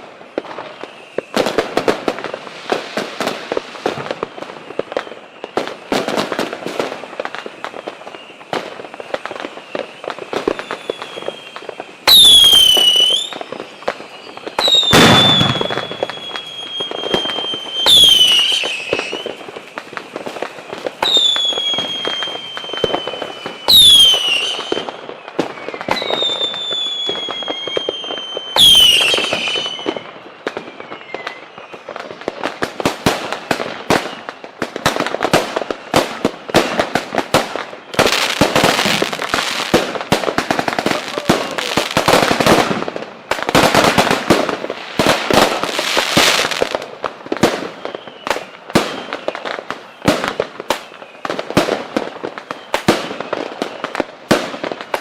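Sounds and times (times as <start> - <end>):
firework bangs: 0.0 - 55.0
firework pops and crackles: 0.0 - 55.0
whistling fireworks: 0.0 - 55.0.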